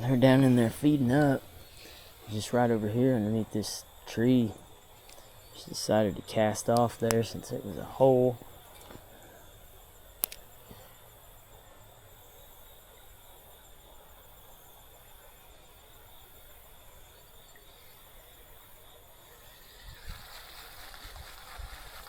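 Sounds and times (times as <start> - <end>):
insects chorus: 0.0 - 22.0
sharp click: 10.2 - 10.4.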